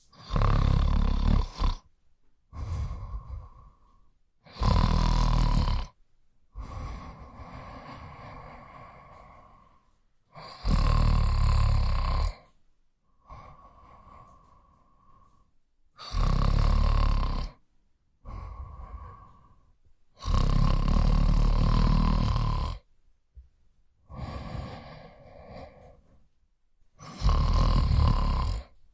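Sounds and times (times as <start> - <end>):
person snoring loudly: 0.1 - 1.9, 2.5 - 6.0, 6.6 - 12.5, 13.2 - 15.4, 16.0 - 17.6, 18.2 - 19.6, 20.2 - 22.9, 24.1 - 26.1, 27.0 - 28.8
soft breathing: 2.5 - 4.6, 6.5 - 10.7, 12.2 - 16.2, 17.4 - 20.3, 23.4 - 26.4.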